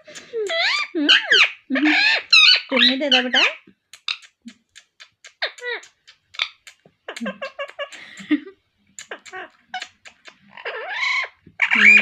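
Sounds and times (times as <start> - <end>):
parrot clicks and chatter: 0.0 - 8.3, 8.9 - 11.0
parrot squawk: 0.5 - 4.3, 9.1 - 12.0.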